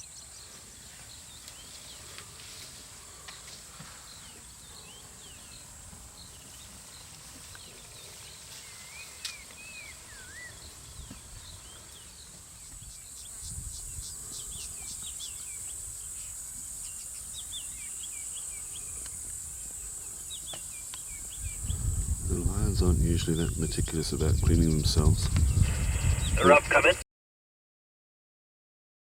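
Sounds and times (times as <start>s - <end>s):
birds chirping and whistling: 6.3s - 18.9s, 20.3s - 26.6s
high-pitched insect drone: 12.9s - 23.7s.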